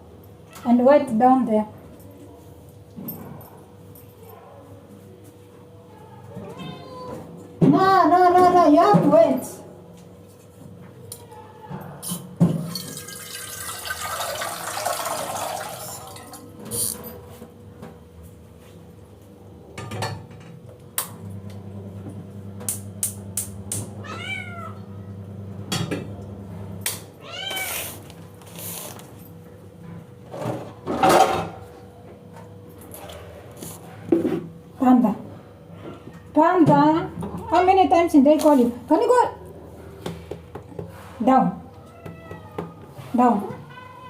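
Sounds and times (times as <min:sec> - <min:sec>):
cat meowing: 0:06.3 - 0:07.2, 0:24.0 - 0:24.8, 0:27.2 - 0:27.9, 0:41.8 - 0:44.0.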